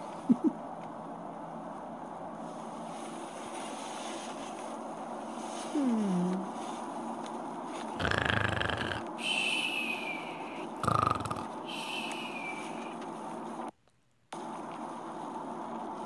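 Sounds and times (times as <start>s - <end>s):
man snoring: 8.0s - 12.6s.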